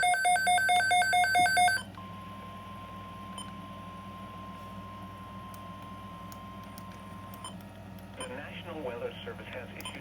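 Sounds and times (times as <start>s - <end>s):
steady alarm tone: 0.0s - 7.4s.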